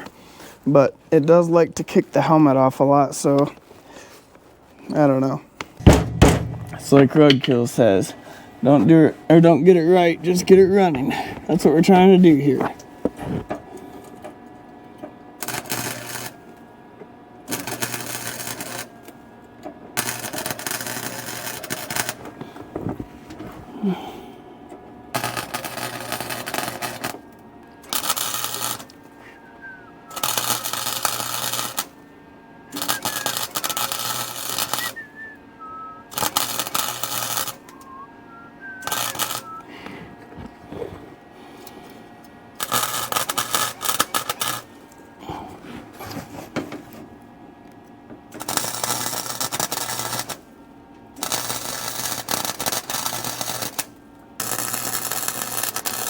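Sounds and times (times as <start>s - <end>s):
welder crackling and buzzing: 5.8s - 16.7s, 17.4s - 23.6s, 25.1s - 32.1s, 32.7s - 45.0s, 48.3s - 50.6s, 51.2s - 56.0s.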